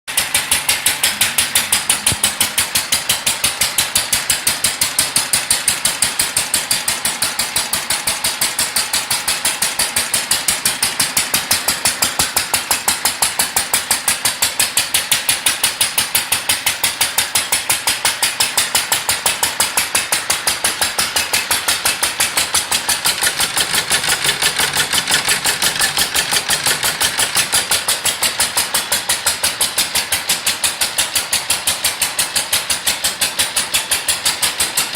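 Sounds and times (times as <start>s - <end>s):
belted corn grinder: 0.1s - 34.9s
stationary engine running: 0.1s - 34.9s.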